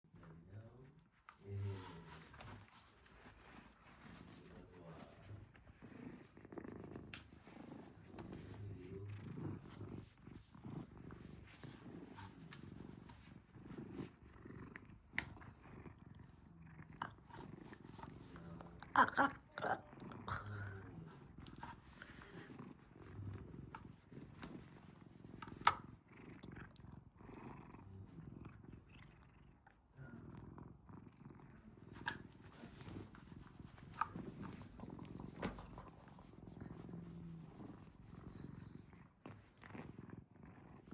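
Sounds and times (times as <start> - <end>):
cat purring: 0.0 - 40.9.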